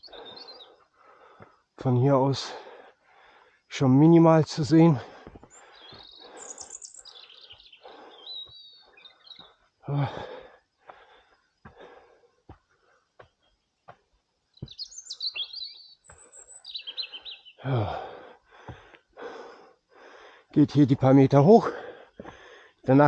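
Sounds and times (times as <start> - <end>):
songbirds chirping and warbling: 0.0 - 23.0
human grunt or breath: 9.9 - 10.5, 17.6 - 18.4.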